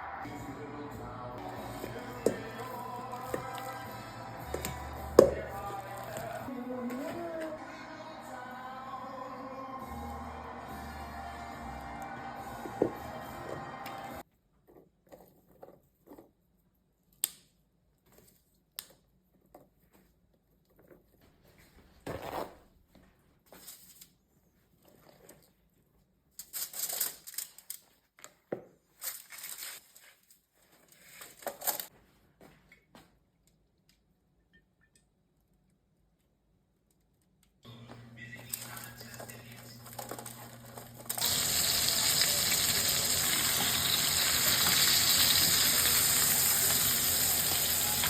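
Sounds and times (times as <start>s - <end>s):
packaging rustling and crinkling: 26.4s - 31.9s, 38.5s - 41.3s.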